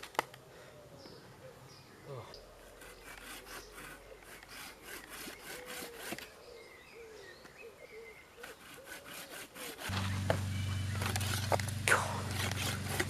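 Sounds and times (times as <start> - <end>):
hand saw cutting wood: 2.6 - 6.3, 8.4 - 13.0.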